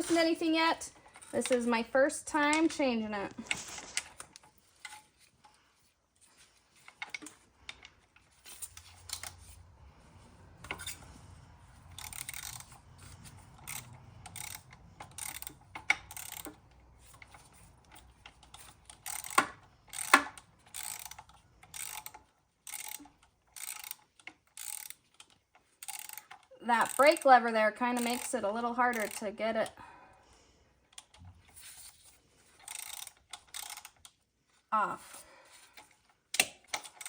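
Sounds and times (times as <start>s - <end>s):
socket ratchet clicking: 11.8s - 16.6s, 17.2s - 26.5s, 32.6s - 34.1s.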